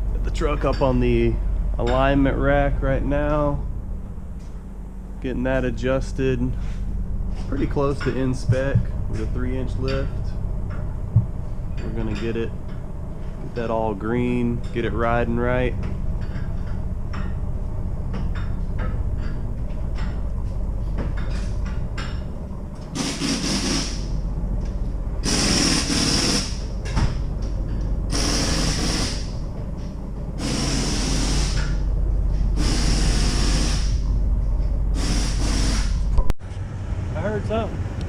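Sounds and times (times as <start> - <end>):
steady low hum: 0.0 - 38.0
compressed air hissing: 23.0 - 24.1, 25.2 - 26.7, 28.1 - 29.4, 30.4 - 31.8, 32.5 - 34.1, 34.9 - 36.1.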